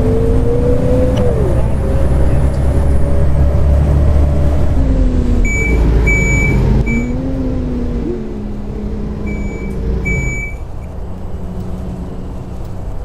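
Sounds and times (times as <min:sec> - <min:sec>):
bus engine rumble: 0:00.0 - 0:13.0
whining drivetrain: 0:00.0 - 0:13.0
high electronic beeps: 0:05.4 - 0:07.2, 0:09.3 - 0:10.6.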